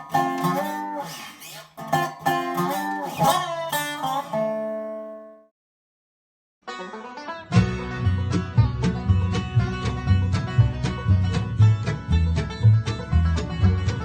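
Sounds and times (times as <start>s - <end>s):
acoustic guitar picking and strumming: 0.0s - 5.2s.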